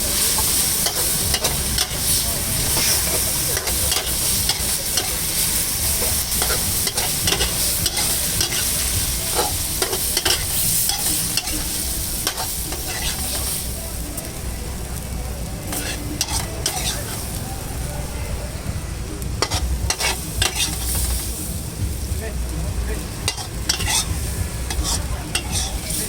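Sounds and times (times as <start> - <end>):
stir fry sizzling: 0.0 - 26.0
metal spatula scraping pan: 2.6 - 13.5, 15.7 - 17.3, 19.4 - 21.2, 23.3 - 26.0
spatula clacking against pan: 6.0 - 11.6, 23.3 - 25.9.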